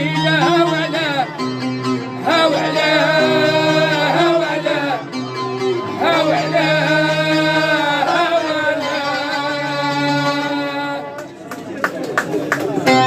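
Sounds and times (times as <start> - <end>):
man singing wavering notes: 0.0 - 11.2
plucked string instrument: 0.0 - 13.0.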